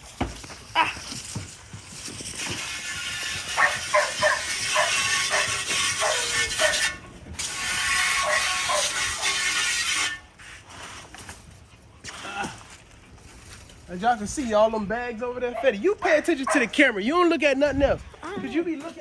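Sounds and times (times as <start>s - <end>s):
dogs barking: 3.5s - 7.0s, 8.2s - 9.1s, 15.4s - 16.8s.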